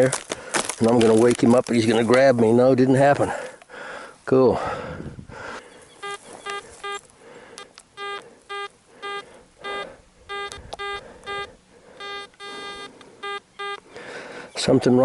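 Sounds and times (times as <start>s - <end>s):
metal detector beeping: 5.9s - 14.7s.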